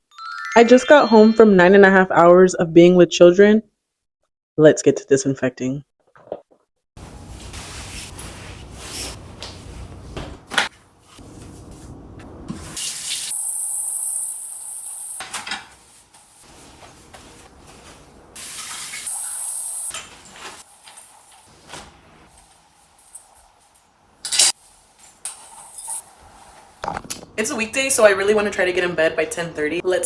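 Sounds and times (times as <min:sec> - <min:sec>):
running tap water: 0:12.6 - 0:15.2, 0:18.4 - 0:20.4.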